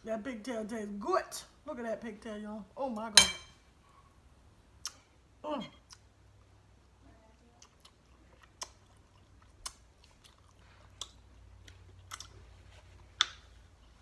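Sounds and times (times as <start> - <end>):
wet chewing smacks: 7.5 - 14.0.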